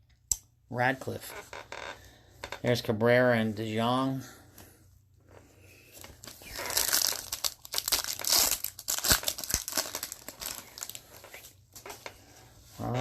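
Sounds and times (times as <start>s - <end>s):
foil wrapper tearing and crinkling: 6.0s - 11.3s.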